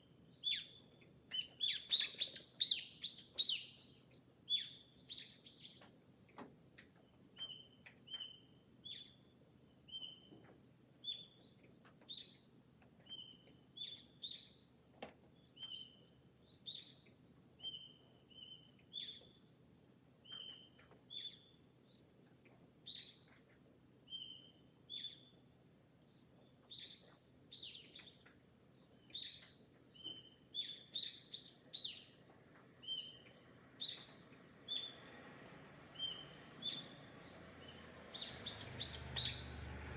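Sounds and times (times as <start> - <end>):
birds chirping: 36.0 - 39.9.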